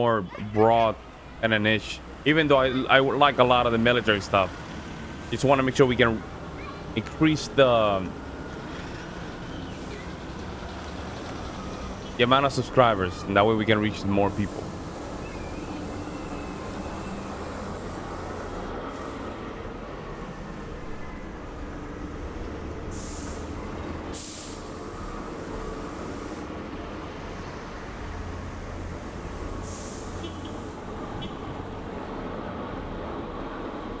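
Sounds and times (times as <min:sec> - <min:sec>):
heavy vehicle engines rumbling: 0:00.0 - 0:34.0
air hissing bursts: 0:13.5 - 0:19.3, 0:22.9 - 0:26.5, 0:29.0 - 0:30.8.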